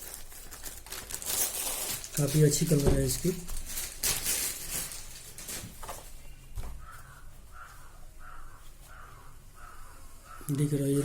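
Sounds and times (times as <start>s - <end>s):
crow cawing: 6.8s - 10.7s.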